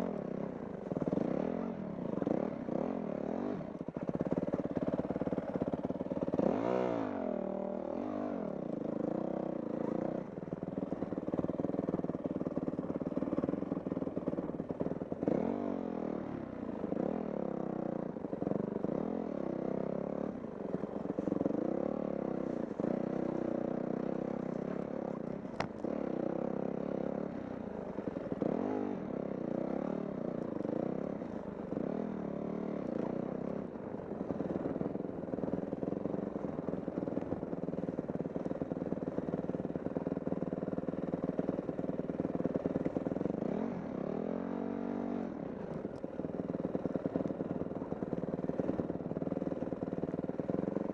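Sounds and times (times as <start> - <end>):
dirt bike engine revving: 6.3 - 8.5, 15.2 - 15.8, 28.2 - 29.0.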